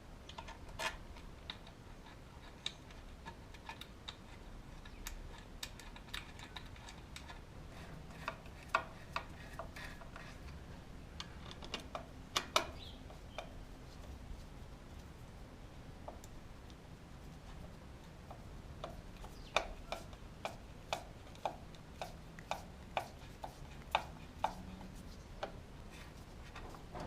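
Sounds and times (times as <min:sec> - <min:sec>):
light clicks and taps on metal: 0:00.2 - 0:07.5, 0:18.2 - 0:27.0.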